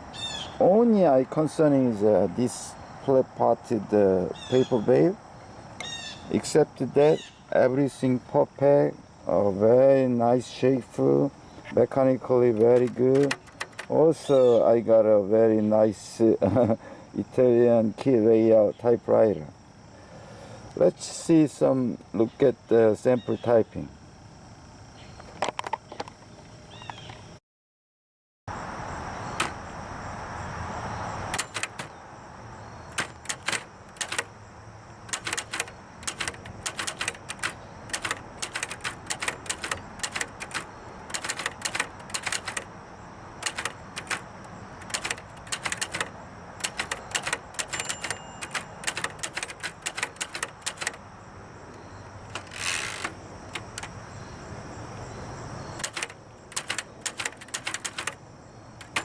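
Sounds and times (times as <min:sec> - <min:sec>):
typewriter scraping sweep: 0:12.5 - 0:13.9, 0:31.3 - 0:31.9, 0:32.9 - 0:34.3, 0:35.1 - 0:42.7, 0:43.4 - 0:51.0, 0:52.3 - 0:53.9, 0:55.8 - 0:58.2, 0:58.8 - 0:59.0
typewriter keystrokes: 0:12.5 - 0:14.0, 0:29.4 - 0:29.6, 0:31.3 - 0:31.9, 0:32.9 - 0:34.3, 0:35.1 - 0:42.7, 0:43.4 - 0:51.0, 0:52.3 - 0:54.0, 0:55.8 - 0:58.2, 0:58.8 - 0:59.0.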